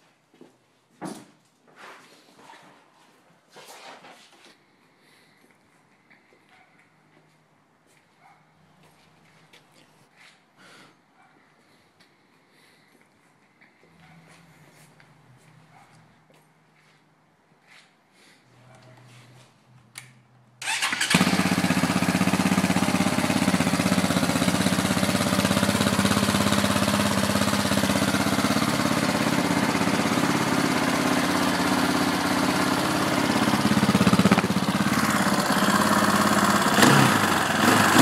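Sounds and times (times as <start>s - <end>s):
engine cranking whirr: 20.6s - 21.8s, 33.7s - 38.0s
engine idling: 20.6s - 38.0s.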